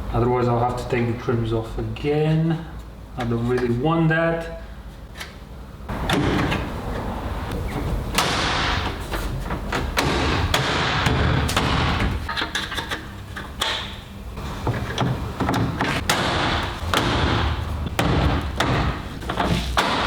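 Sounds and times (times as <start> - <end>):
knocks and thumps on car bodywork: 5.9 - 6.7, 7.8 - 12.4, 14.6 - 20.0.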